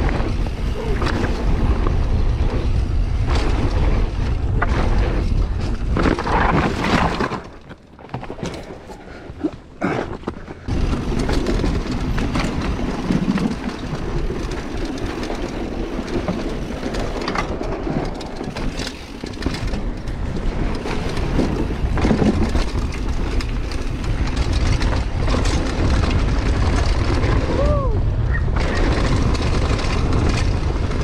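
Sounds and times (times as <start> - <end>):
bike rattling and clicking: 0.0 - 31.0
tyres rumbling over trail: 0.0 - 31.0.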